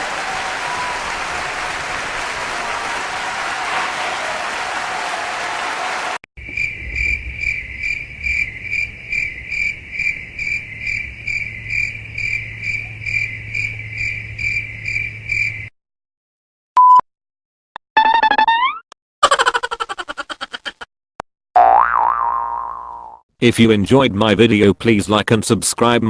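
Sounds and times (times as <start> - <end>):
crowd applause: 0.0 - 6.2
cricket chirping: 6.4 - 15.7.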